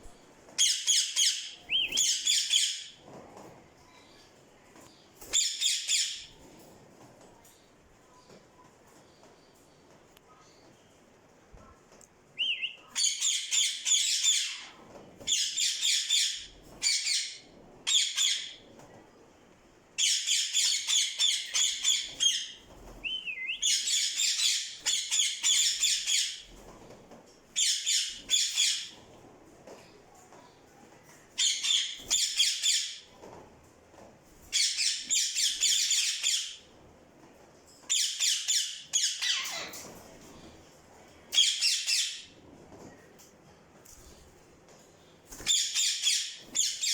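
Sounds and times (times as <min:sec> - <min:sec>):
parrot squawking: 0:38.2 - 0:39.8.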